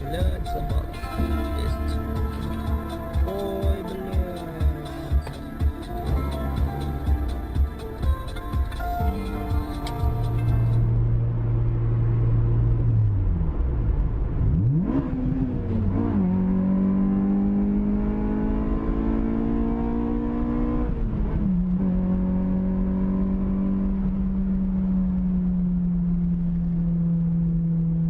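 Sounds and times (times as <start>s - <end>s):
car engine running: 0.0s - 18.2s.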